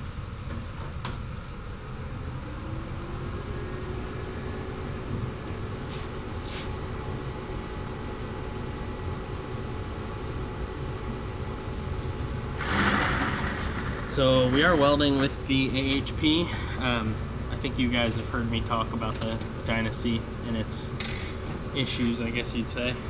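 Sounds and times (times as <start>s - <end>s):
welder cooling fan spinning up: 1.3s - 17.4s
low electrical hum: 13.3s - 23.0s.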